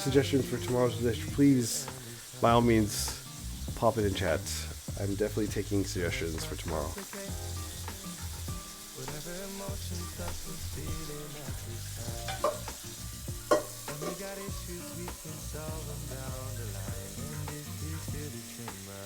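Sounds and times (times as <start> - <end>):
background music: 0.0 - 19.0
food frying in a pan: 0.0 - 19.0.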